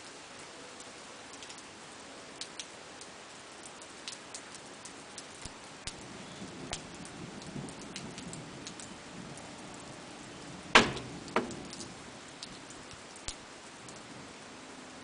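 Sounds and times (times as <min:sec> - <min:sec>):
rain falling: 0:00.0 - 0:15.0
sharp knocks: 0:10.8 - 0:11.8
drops ticking on hard surface: 0:10.8 - 0:13.3.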